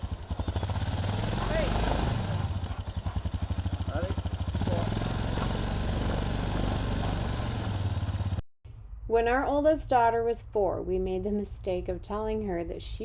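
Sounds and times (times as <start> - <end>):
small engine running: 0.0 - 8.4.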